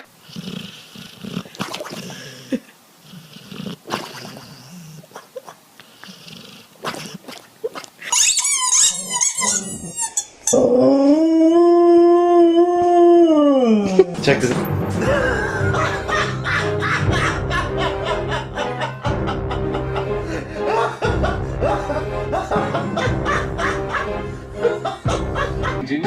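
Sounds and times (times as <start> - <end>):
dog growling: 0.0 - 7.9
dog yelping: 7.7 - 10.5
dog howling: 8.8 - 14.1.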